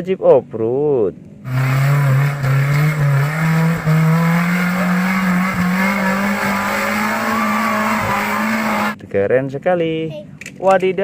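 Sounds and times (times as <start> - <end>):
car engine drone rising in pitch: 1.4 - 9.0.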